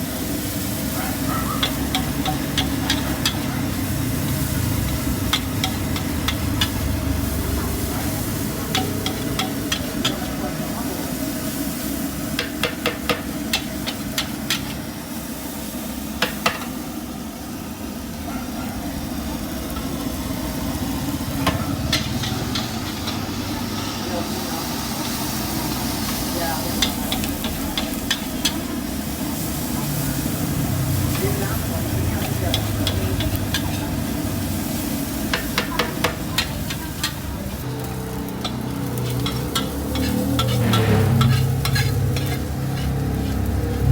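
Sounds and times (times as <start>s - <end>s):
stir-frying sizzle: 0.0s - 43.9s
metal spatula scraping wok: 0.7s - 15.0s, 20.7s - 43.9s
metal spatula clanking on wok: 1.4s - 3.8s, 4.8s - 6.8s, 8.4s - 10.4s, 32.2s - 34.2s, 35.2s - 37.2s, 38.4s - 43.4s.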